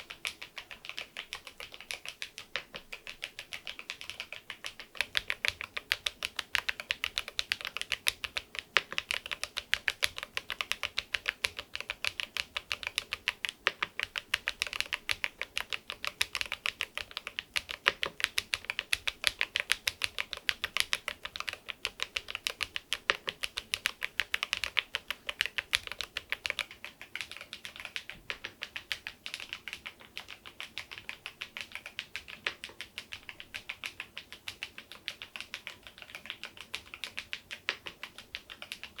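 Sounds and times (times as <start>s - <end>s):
fast keyboard typing: 0.0s - 39.0s.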